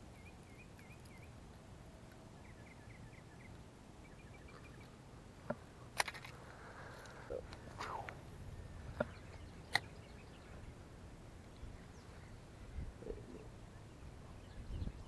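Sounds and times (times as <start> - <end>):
low outdoor rumble: 0.0 - 15.0
songbird chirping: 0.0 - 15.0
sharp clicks: 9.0 - 10.0.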